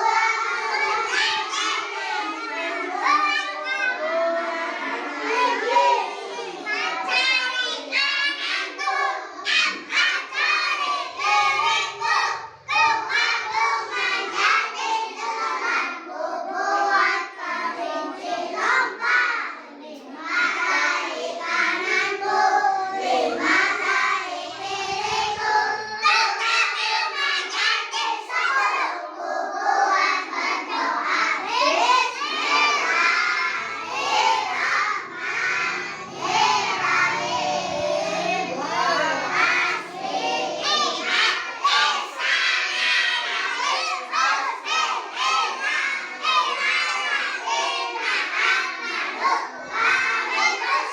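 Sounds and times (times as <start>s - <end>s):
children shouting: 0.0s - 50.9s
children singing together: 0.0s - 50.9s.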